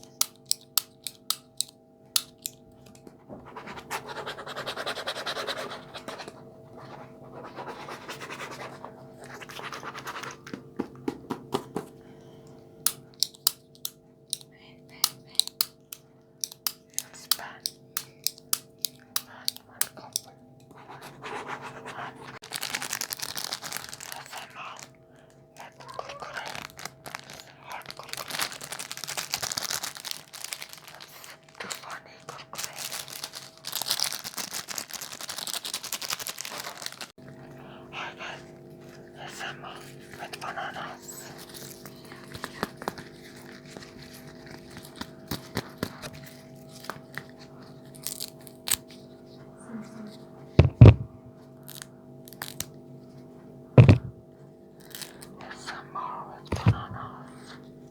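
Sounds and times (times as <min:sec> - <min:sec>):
faint steady hum: 0:00.0 - 0:34.0, 0:37.2 - 0:57.9
scratching on a surface: 0:03.4 - 0:10.5.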